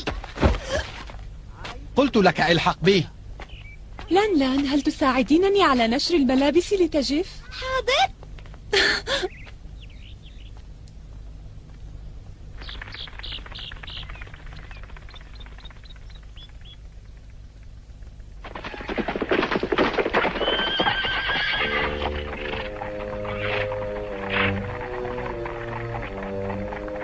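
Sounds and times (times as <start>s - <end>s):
cartoon music: 21.6s - 27.0s.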